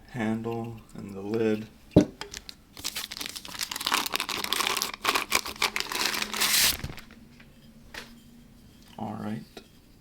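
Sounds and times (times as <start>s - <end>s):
packaging crinkling and tearing: 2.3s - 7.2s.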